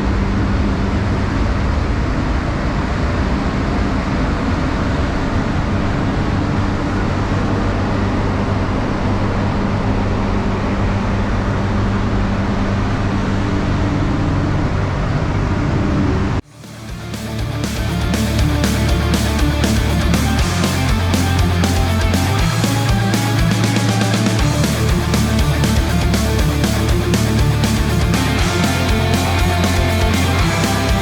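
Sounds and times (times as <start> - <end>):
low hum: 0.0 - 31.0
spray booth fans rushing air: 16.4 - 31.0.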